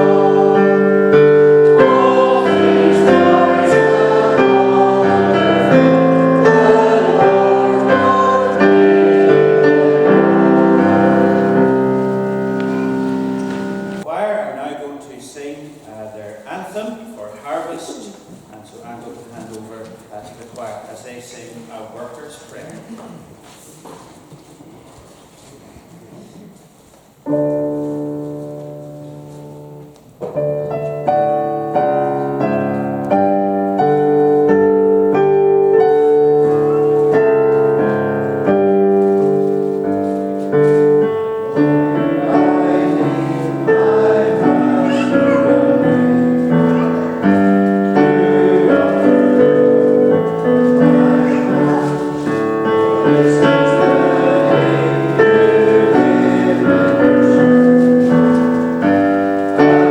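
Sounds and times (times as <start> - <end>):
piano playing chords: 0.0 - 14.1, 27.3 - 59.9.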